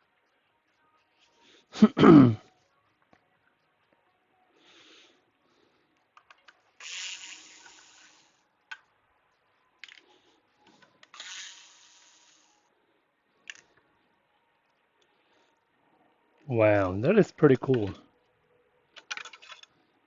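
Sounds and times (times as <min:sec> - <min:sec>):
light clicks and taps of parts: 0:05.9 - 0:06.7, 0:09.8 - 0:11.2, 0:18.9 - 0:19.8.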